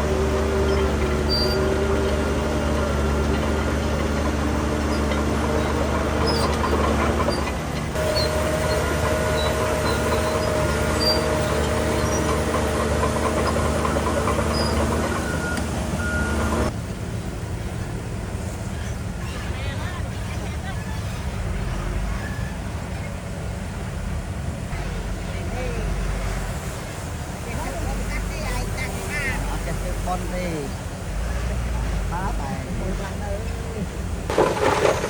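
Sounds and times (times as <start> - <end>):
diesel construction machinery running: 0.0 - 35.0.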